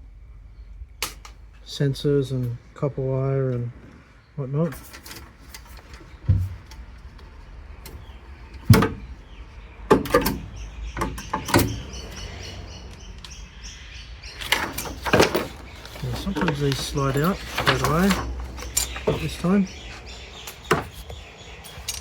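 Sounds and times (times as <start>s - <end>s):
metal knocks and clanks: 4.7s - 7.2s, 8.0s - 9.3s, 14.3s - 21.2s
metal scraping: 14.3s - 22.0s.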